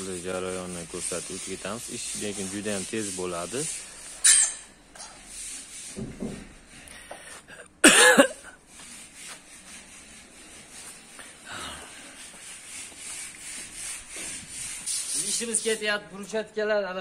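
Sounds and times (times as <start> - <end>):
person coughing: 7.5 - 8.6.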